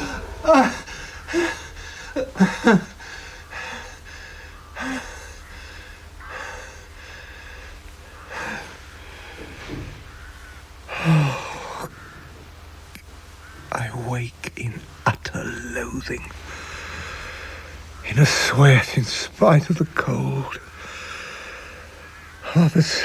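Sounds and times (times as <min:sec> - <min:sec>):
man breathing heavily: 0:00.0 - 0:10.0, 0:16.4 - 0:17.9.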